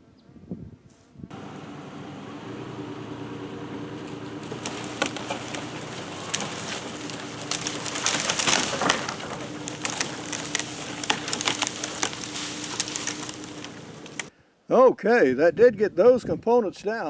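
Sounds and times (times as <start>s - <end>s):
branches crackling and scraping: 1.3s - 14.3s
pickup truck engine running: 1.3s - 14.3s.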